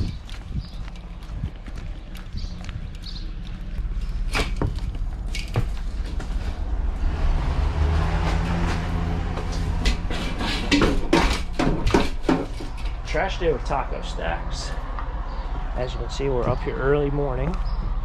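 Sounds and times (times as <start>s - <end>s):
vehicle engine rumbling: 0.0s - 18.0s
sharp knocks: 9.5s - 13.0s.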